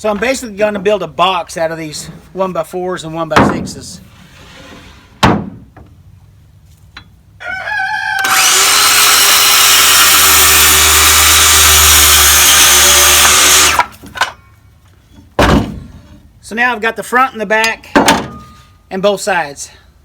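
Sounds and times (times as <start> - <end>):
power tool motor running: 8.2 - 13.9.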